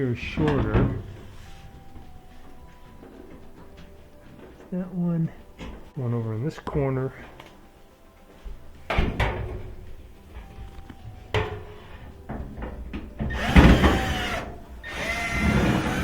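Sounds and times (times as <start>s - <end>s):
metallic scraping and squeaking: 0.0s - 7.3s.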